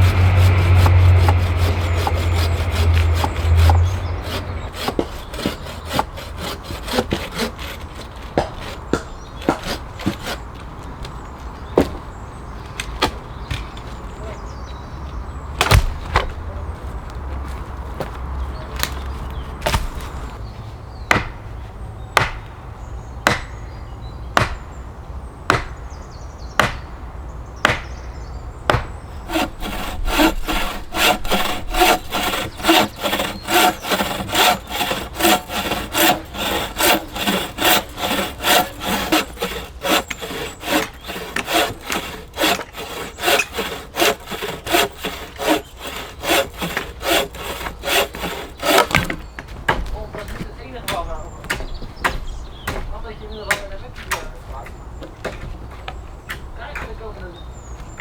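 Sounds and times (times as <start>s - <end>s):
hand saw cutting wood: 0.0s - 11.2s, 28.7s - 49.3s.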